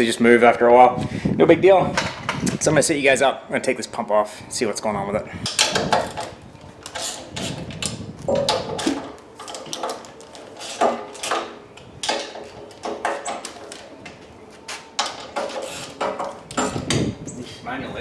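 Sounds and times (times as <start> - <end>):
metal tools clanking: 14.9 - 17.1.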